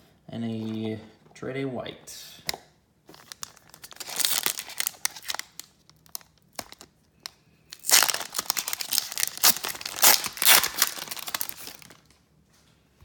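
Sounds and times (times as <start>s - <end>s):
foil wrapper crinkling and tearing: 3.2s - 12.1s.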